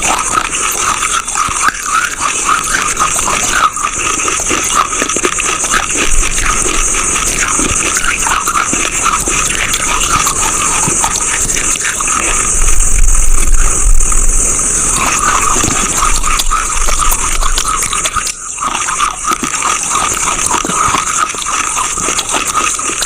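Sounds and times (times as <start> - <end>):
chewing chalk crackles: 0.0 - 23.0
steady hiss: 0.0 - 23.0.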